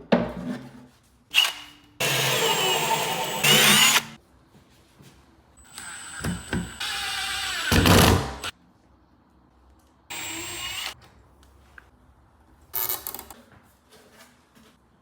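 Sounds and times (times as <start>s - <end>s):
power drill running: 1.4s - 4.2s, 5.6s - 8.5s, 10.1s - 11.0s.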